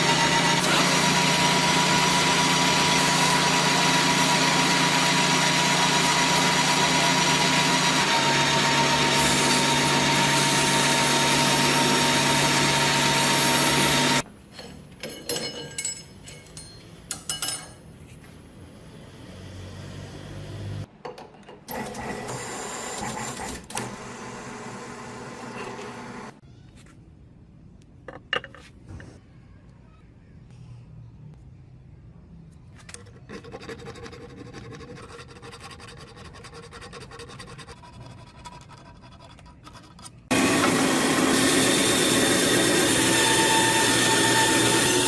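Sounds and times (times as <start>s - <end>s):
power tool whining: 0.0s - 14.2s, 21.7s - 26.4s, 40.3s - 45.0s.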